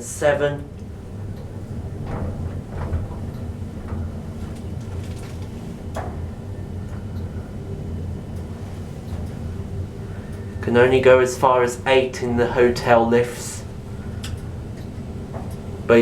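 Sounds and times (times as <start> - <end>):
lift low hum: 0.0 - 16.0
faint clicks: 14.2 - 15.7.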